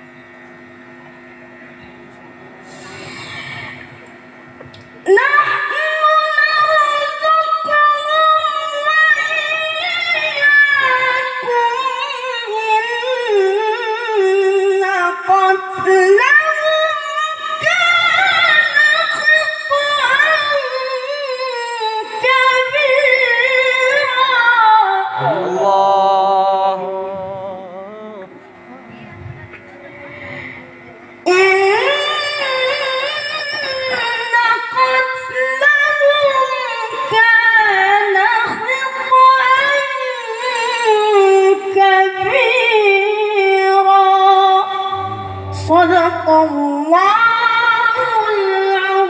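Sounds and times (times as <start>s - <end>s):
person chanting solo: 25.2s - 28.4s, 44.8s - 47.1s.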